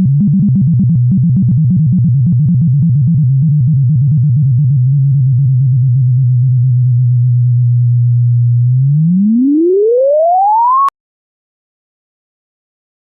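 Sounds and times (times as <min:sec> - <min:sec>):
synthesised sine tones: 0:00.0 - 0:10.9.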